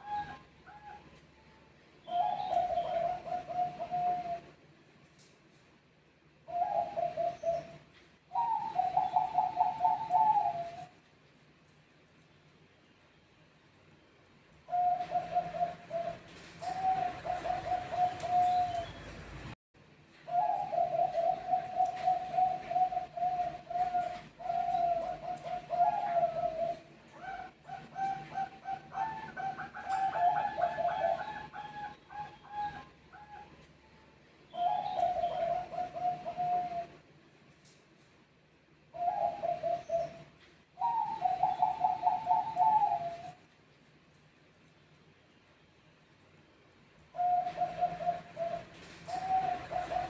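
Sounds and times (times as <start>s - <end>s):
doves cooing: 0.0s - 1.2s, 2.1s - 4.6s, 6.4s - 11.0s, 14.6s - 19.2s, 20.2s - 33.7s, 34.5s - 37.0s, 38.9s - 43.4s, 47.1s - 50.0s.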